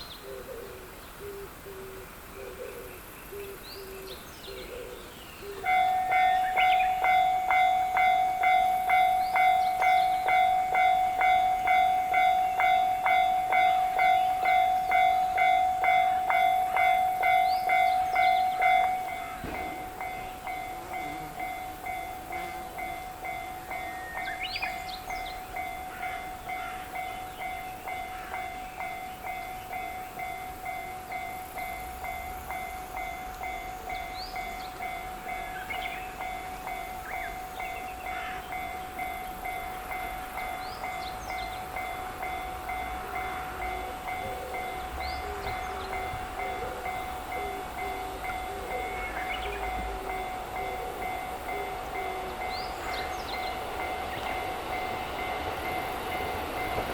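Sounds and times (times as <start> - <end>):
birds chirping: 0.0 - 56.9
level-crossing warning bell: 5.4 - 56.9.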